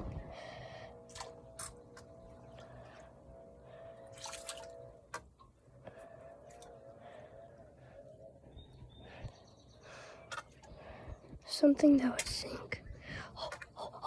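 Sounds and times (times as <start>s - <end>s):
light water splashes: 4.1s - 5.4s
water dripping: 4.2s - 4.8s.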